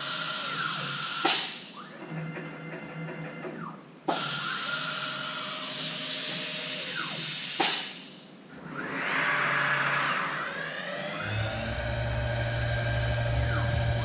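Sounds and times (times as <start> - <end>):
milling machine cutting hiss: 4.1 - 7.8
spindle whine: 8.5 - 14.0.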